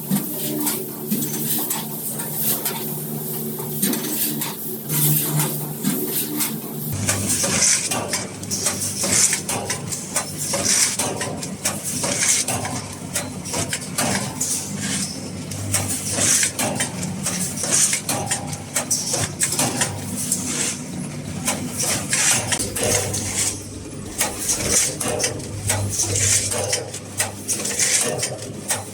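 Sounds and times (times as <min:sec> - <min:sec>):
mechanical clicking and clattering: 0:00.1 - 0:28.9
machine motor hum: 0:21.2 - 0:28.8.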